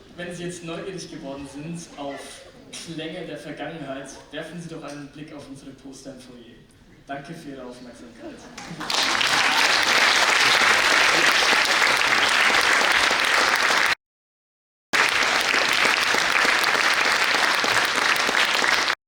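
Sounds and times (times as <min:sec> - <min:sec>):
audience applauding: 0:08.6 - 0:14.0, 0:15.0 - 0:19.0.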